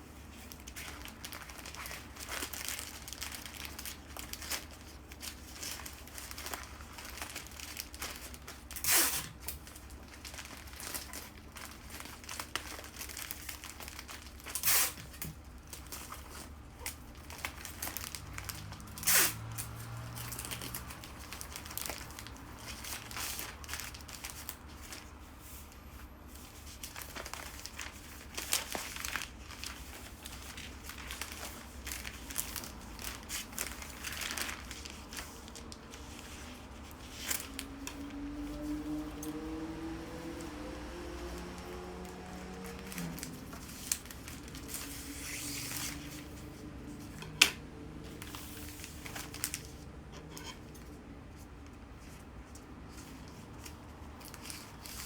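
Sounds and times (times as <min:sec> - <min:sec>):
cellophane crinkling: 0:00.1 - 0:55.0
paper ripping: 0:00.5 - 0:25.0, 0:26.8 - 0:38.2, 0:40.9 - 0:46.4.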